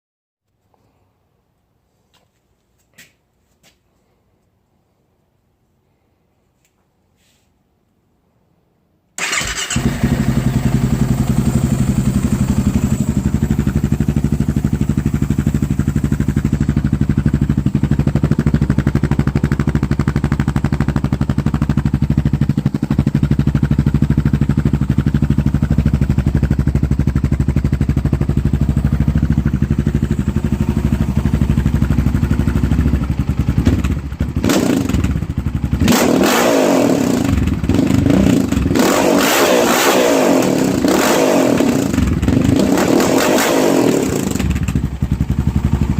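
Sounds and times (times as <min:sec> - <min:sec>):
engine revving: 0:09.2 - 0:15.2, 0:33.6 - 0:35.2, 0:35.8 - 0:44.8
atv engine starting and idling: 0:09.2 - 0:45.9.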